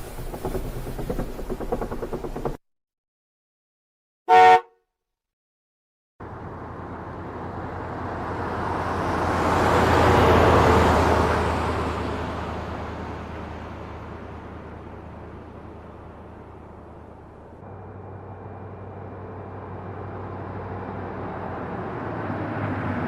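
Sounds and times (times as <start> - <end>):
short horn toot: 4.3 - 4.8
vehicle passing by: 6.2 - 16.8, 17.7 - 23.0.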